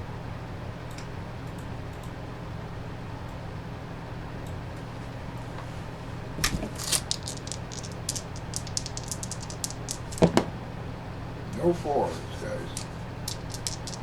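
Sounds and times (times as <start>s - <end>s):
low electrical hum: 2.6s - 14.0s
dice rattling: 6.4s - 10.4s, 12.6s - 14.0s
dice knocking as they land: 6.4s - 10.5s, 12.7s - 14.0s.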